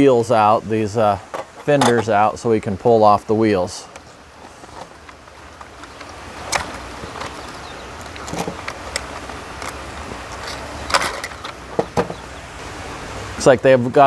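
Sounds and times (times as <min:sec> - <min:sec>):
plastic parts clicking and knocking: 0:01.2 - 0:02.2, 0:03.8 - 0:12.3.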